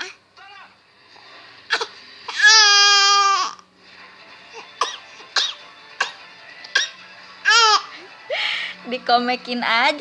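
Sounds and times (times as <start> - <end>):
baby coughing: 1.7 - 3.6, 4.5 - 7.9.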